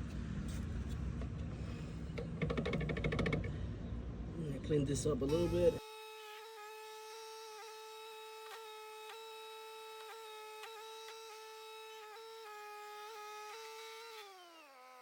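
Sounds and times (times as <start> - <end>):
small motor whine: 5.3 - 15.0.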